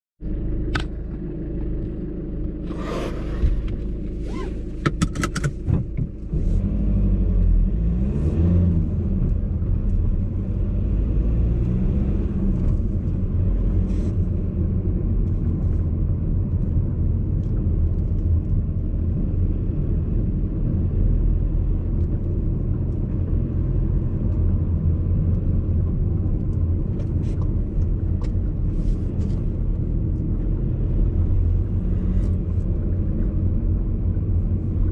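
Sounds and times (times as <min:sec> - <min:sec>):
road and engine rumble: 0:00.2 - 0:34.9
suspension clicks and knocks: 0:03.4 - 0:06.2.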